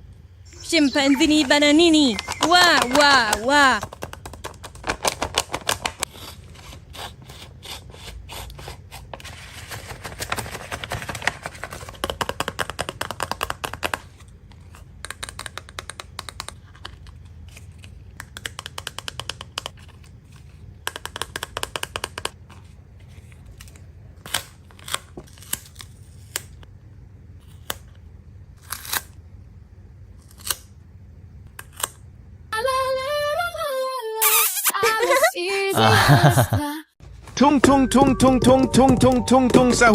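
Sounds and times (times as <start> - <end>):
paper bags crinkling: 2.2 - 6.1, 9.2 - 12.2.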